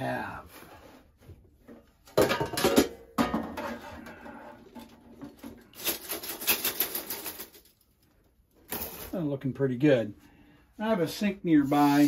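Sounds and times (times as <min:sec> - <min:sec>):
metal parts rattling in wire basket: 0:05.7 - 0:07.8.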